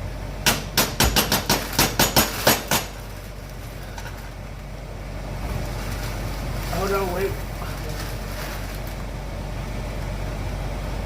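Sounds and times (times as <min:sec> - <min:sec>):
sticky mixture being stirred: 0:05.4 - 0:09.1.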